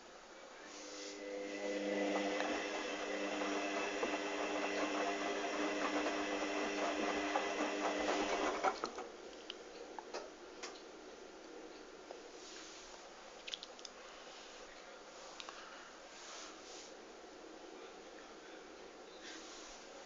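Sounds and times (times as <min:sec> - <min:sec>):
washing machine drum motor humming: 0:00.8 - 0:09.1.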